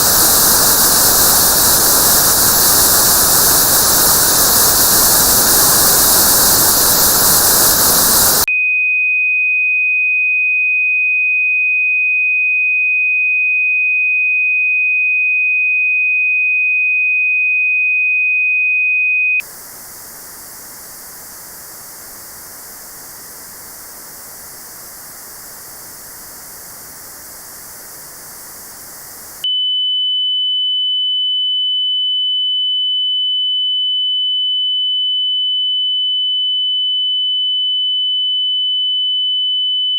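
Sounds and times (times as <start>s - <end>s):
high-pitched pure test tone: 0.0s - 8.5s
notched white noise hiss: 0.0s - 8.5s, 19.4s - 29.4s.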